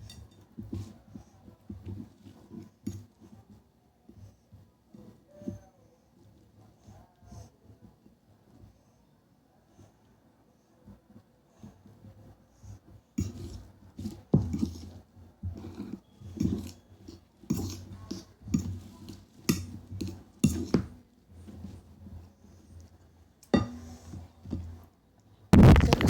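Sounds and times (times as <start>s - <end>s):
cutlery and dishes clinking: 0.0s - 0.9s, 13.2s - 14.9s, 15.5s - 21.8s, 23.4s - 24.8s.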